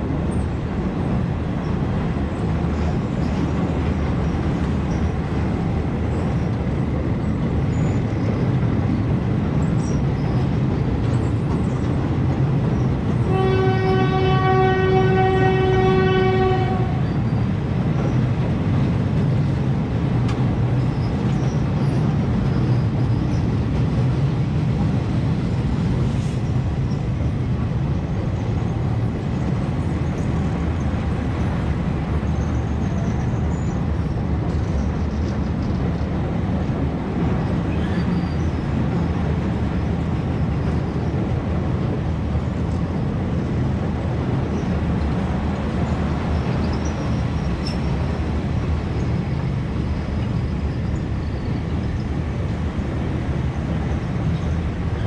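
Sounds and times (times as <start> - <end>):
diesel train rumbling: 0.0 - 55.0
train horn blast: 13.2 - 17.2.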